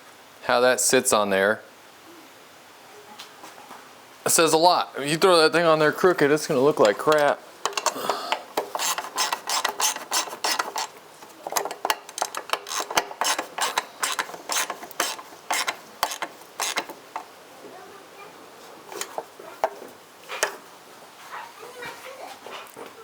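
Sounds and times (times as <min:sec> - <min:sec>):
ratchet wrench clicking: 0:06.8 - 0:17.3.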